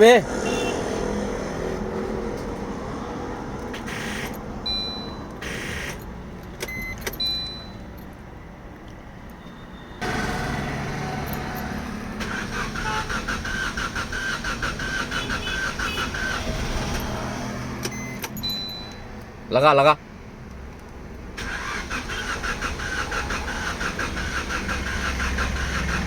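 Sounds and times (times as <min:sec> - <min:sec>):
short beeps: 0:04.7 - 0:05.3, 0:06.7 - 0:07.8, 0:17.9 - 0:19.1
car engine cranking on starter: 0:10.0 - 0:18.0, 0:21.4 - 0:26.0.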